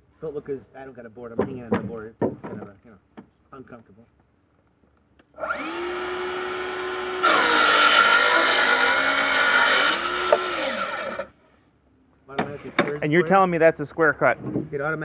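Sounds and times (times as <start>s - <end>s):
track saw cutting a board: 5.4s - 11.3s.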